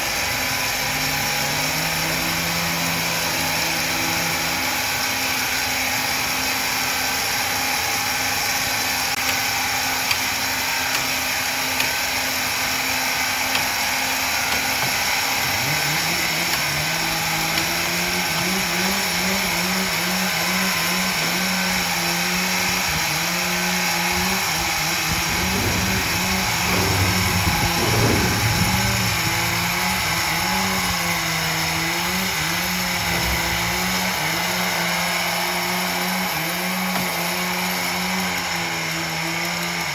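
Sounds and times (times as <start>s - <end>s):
motor humming: 0.0s - 39.9s
wood-processing machinery whine: 0.0s - 39.9s.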